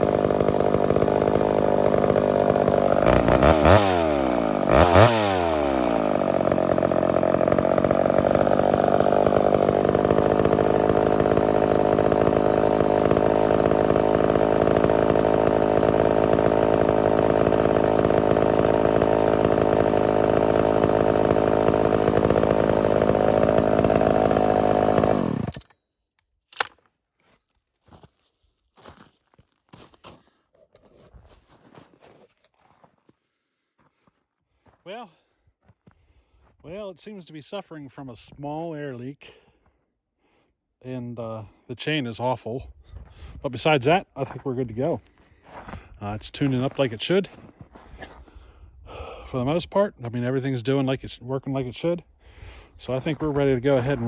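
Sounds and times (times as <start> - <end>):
chainsaw engine running and revving: 0.0 - 25.5, 46.2 - 47.1, 52.8 - 54.0.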